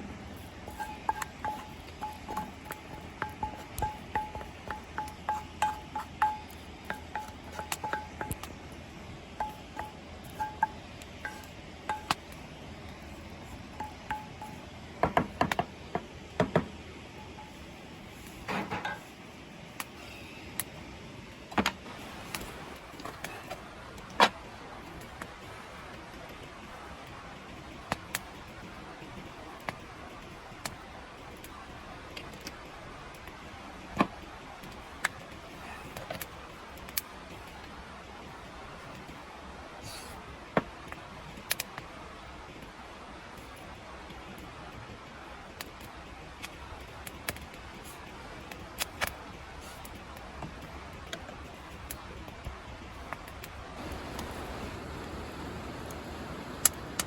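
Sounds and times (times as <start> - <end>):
campfire crackling: 0.0 - 57.0
metallic pings and clinks: 0.7 - 8.5.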